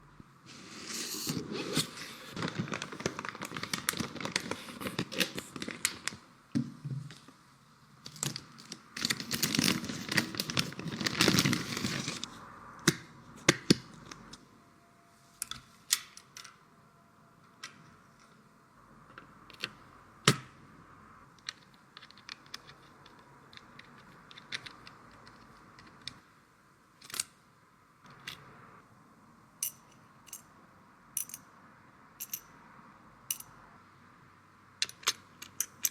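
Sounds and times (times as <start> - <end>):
cardboard and plastic rustling: 0.5 - 6.2, 8.2 - 12.3.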